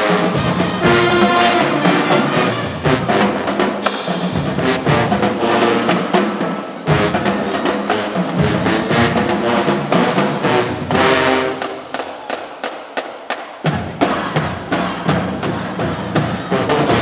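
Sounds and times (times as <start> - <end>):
marching band playing: 0.0 - 17.0
sharp drum hits: 0.3 - 5.2.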